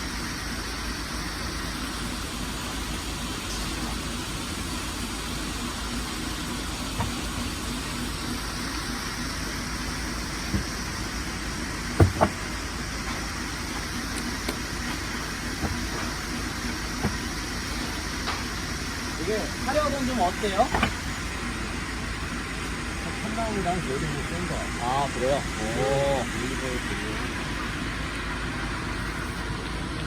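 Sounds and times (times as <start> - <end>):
low engine rumble and hiss: 0.0 - 30.0
sharp knocks: 12.0 - 12.5.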